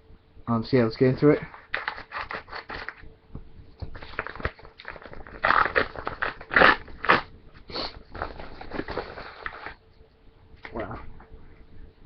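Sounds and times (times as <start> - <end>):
packaging crinkling and tearing: 1.5 - 3.0, 3.9 - 7.3, 8.1 - 9.8.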